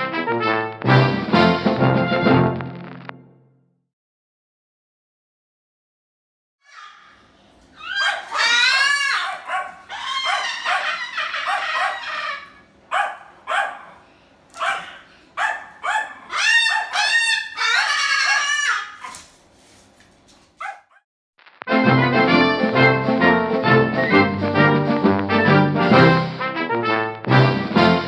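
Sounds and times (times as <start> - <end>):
cockatoo bark-like calls: 6.7 - 19.4, 20.6 - 21.0.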